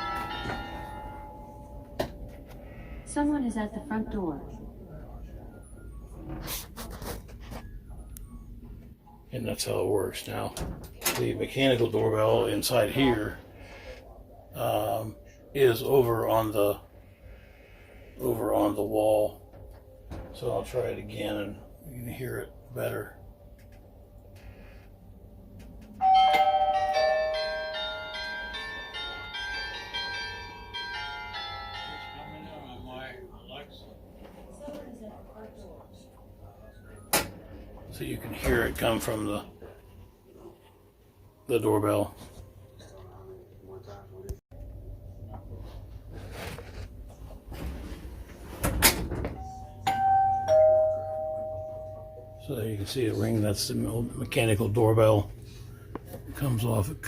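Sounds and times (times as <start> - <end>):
doorbell chime tune: 0.0 - 2.4, 26.0 - 33.2, 49.4 - 52.5.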